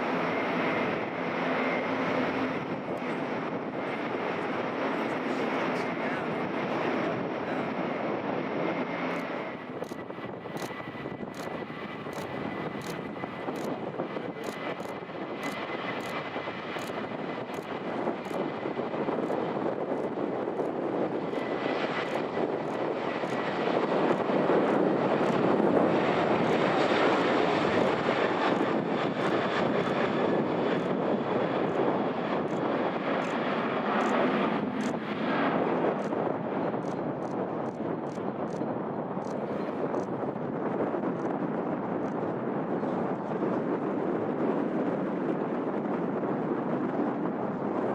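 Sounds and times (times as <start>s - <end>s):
jet engines rushing and whining: 0.0s - 47.9s.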